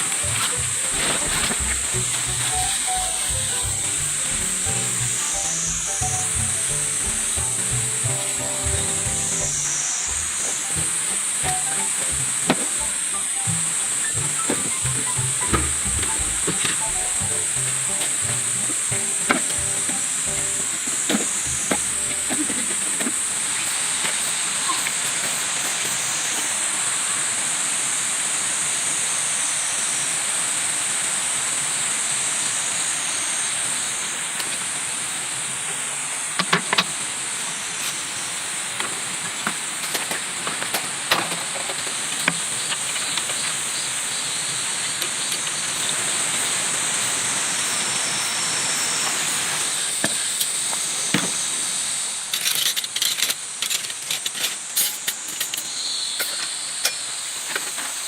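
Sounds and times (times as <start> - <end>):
high-pitched tone: 0.0 - 22.9
steady hiss: 0.0 - 58.0.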